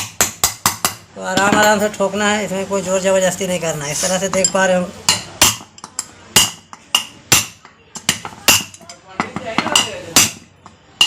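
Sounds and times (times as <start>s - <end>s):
hammer tapping metal: 0.0s - 1.9s, 4.2s - 11.0s.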